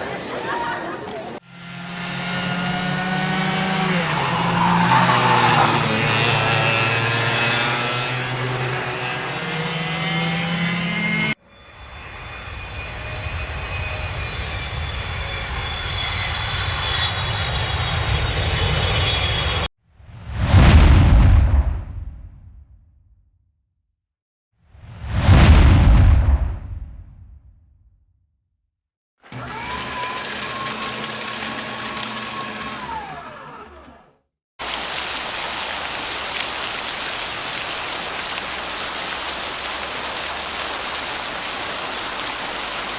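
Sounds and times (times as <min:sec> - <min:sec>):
engine-like drone with whine: 0:01.4 - 0:19.7
heavy rain: 0:34.6 - 0:42.9.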